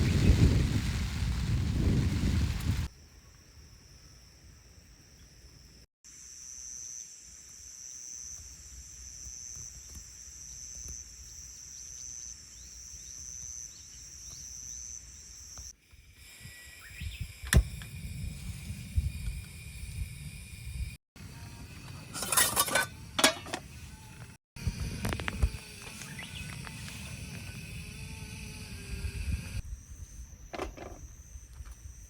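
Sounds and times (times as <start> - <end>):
insects trilling: 2.9 - 32.0.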